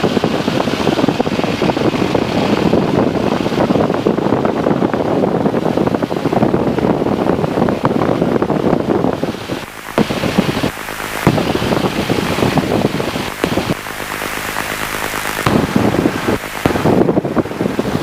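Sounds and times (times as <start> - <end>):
light aircraft taxiing: 0.0 - 18.0
wind buffeting microphone: 0.0 - 18.0
dense crackle: 9.6 - 17.0.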